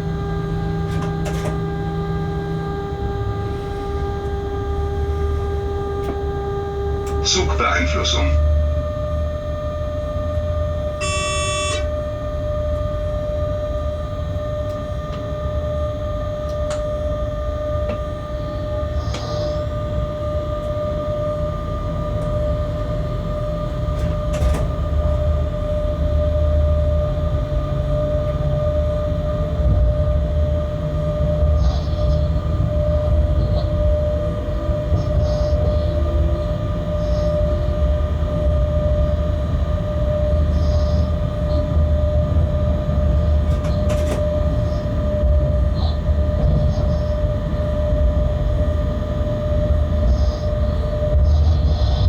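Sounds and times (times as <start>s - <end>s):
constant whine: 0.0s - 52.0s
locomotive running rumble: 0.0s - 52.0s
short electronic beep: 11.0s - 11.9s.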